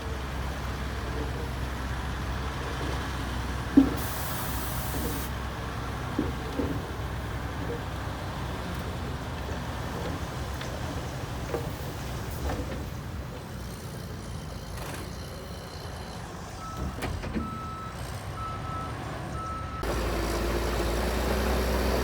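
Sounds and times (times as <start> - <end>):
heavy machinery engine rumbling: 0.0 - 22.0
reversing alarm beeping: 16.6 - 20.0.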